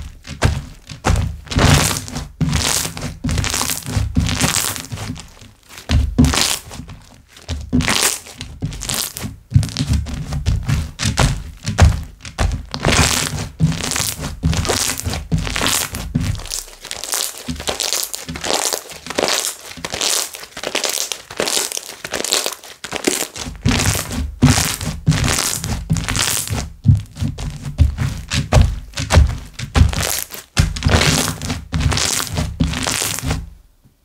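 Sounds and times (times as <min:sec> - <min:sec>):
slime crackling and squelching: 0:00.0 - 0:33.5
dull thuds of slime slapped down: 0:23.6 - 0:33.4.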